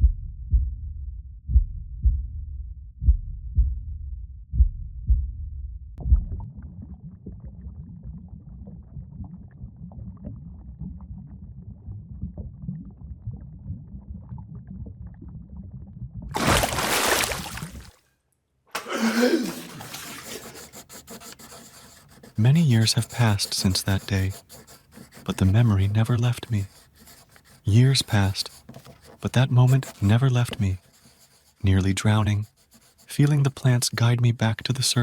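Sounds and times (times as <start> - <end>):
heartbeat thumps: 0.0 - 6.5
muffled underwater rumble: 6.0 - 16.3.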